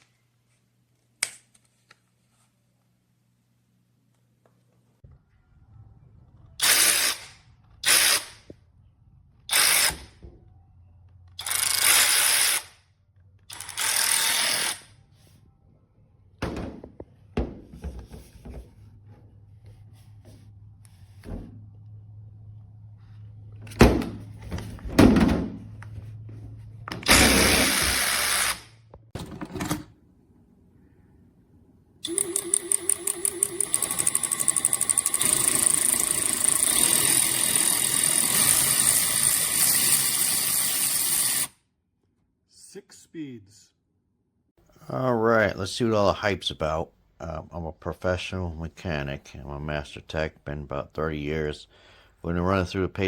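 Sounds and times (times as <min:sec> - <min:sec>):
electric ratchet wrench running: 0:11.4 - 0:12.7, 0:13.5 - 0:14.8, 0:27.1 - 0:28.8, 0:32.0 - 0:41.5.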